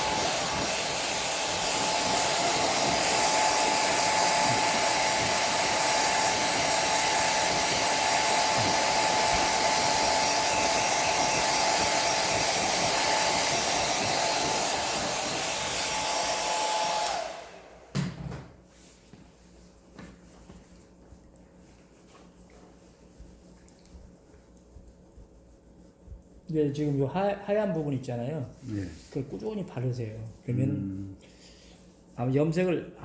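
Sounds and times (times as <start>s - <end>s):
hair dryer blowing with whine: 0.0s - 19.3s.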